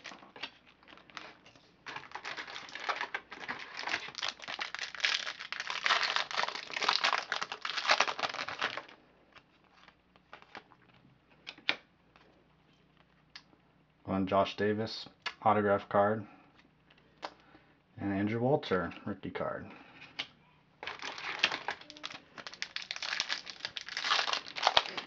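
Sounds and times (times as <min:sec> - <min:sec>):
card pack wrapper tearing: 0:01.9 - 0:08.9, 0:20.8 - 0:25.0.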